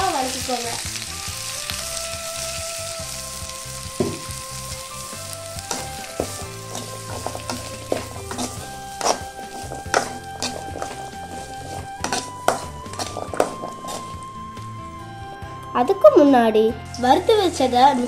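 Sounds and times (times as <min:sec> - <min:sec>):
food sizzling in hot oil: 0:00.0 - 0:18.0
knocks against pan: 0:04.0 - 0:04.3.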